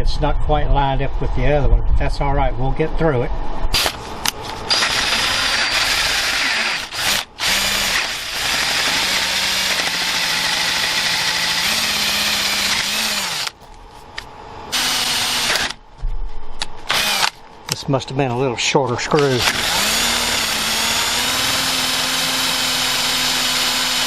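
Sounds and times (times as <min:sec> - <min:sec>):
power drill drilling: 0:03.8 - 0:04.0, 0:04.7 - 0:13.6, 0:14.7 - 0:15.8, 0:16.9 - 0:17.4, 0:19.2 - 0:24.0.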